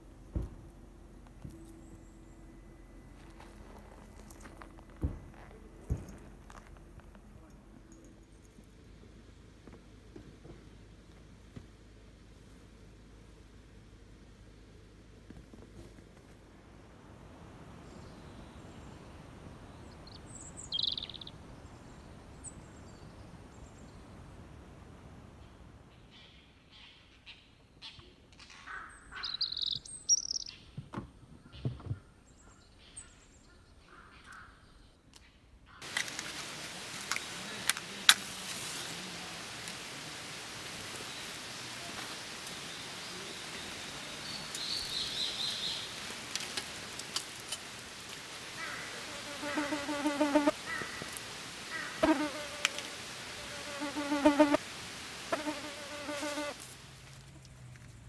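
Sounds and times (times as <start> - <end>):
steady outdoor hiss: 0.0 - 58.0
short bird chirps: 20.1 - 21.3, 29.2 - 30.7
flying insect buzzing: 48.6 - 51.1, 51.7 - 54.6, 55.2 - 56.8
faint clicks: 57.1 - 58.0.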